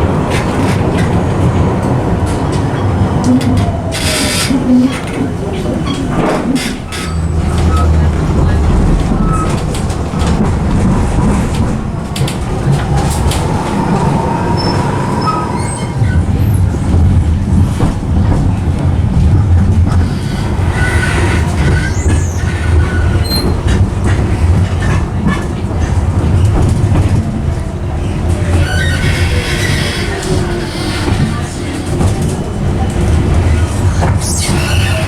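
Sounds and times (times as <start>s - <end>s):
tram rumbling on rails: 0.0s - 35.0s
high wheel squeals: 13.4s - 16.2s, 28.4s - 31.8s.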